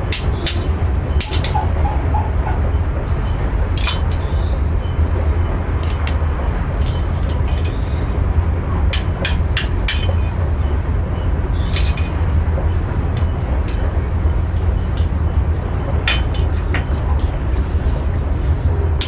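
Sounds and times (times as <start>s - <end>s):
steady low rumble: 0.0s - 19.0s
metallic clinks of steel rebar and tools: 11.7s - 12.2s.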